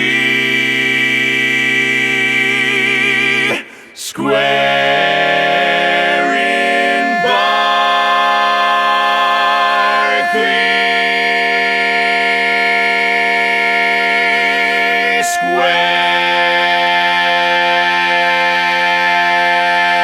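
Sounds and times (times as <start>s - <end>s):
a cappella close-harmony singing: 0.0s - 20.0s.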